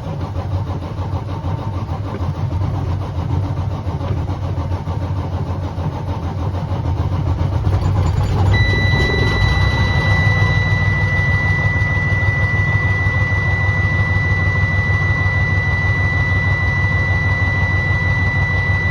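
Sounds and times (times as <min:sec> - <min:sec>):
diesel truck engine running: 0:00.0 - 0:18.9
steady high-pitched tone: 0:07.3 - 0:18.9.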